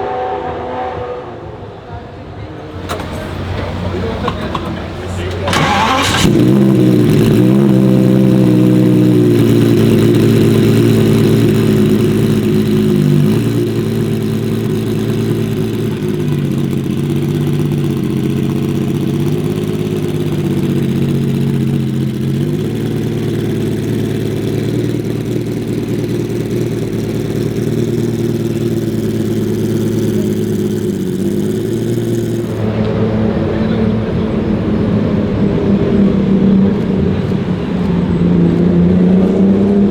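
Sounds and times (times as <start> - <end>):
car engine idling: 2.6 - 39.9.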